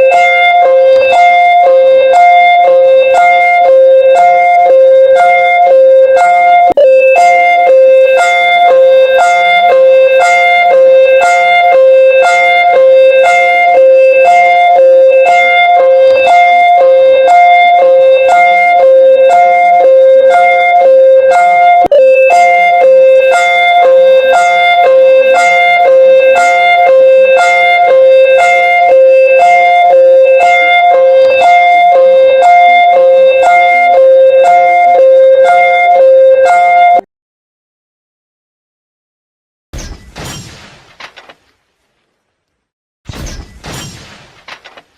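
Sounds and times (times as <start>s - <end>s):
steady alarm tone: 0.0s - 37.1s
sharp click: 39.8s - 41.6s, 43.1s - 44.9s.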